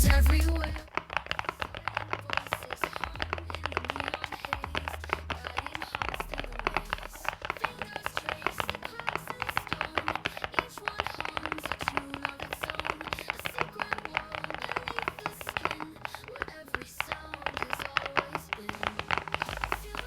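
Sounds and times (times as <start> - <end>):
background music with bass: 0.0 - 0.9, 18.6 - 20.0
fast mechanical keyboard typing: 0.8 - 20.0.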